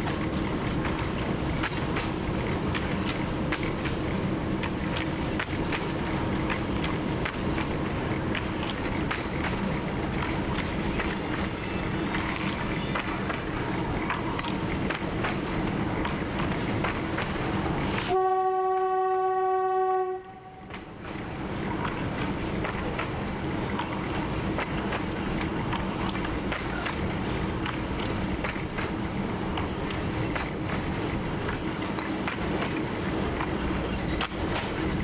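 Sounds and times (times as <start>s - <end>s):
wheels clicking over rail joints: 0.0s - 17.8s, 20.2s - 35.0s
locomotive engine drone: 0.0s - 35.0s
diesel locomotive horn blast: 18.1s - 20.8s.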